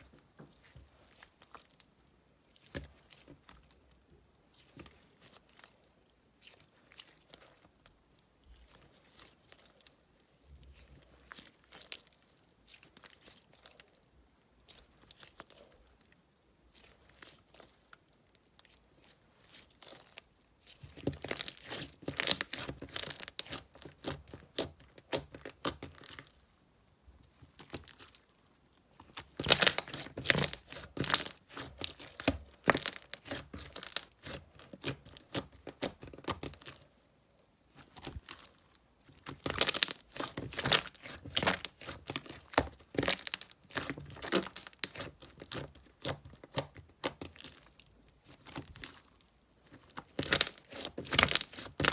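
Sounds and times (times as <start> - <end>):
slime crackling and popping: 19.6 - 26.2, 29.0 - 36.8, 37.7 - 49.1, 49.7 - 51.9.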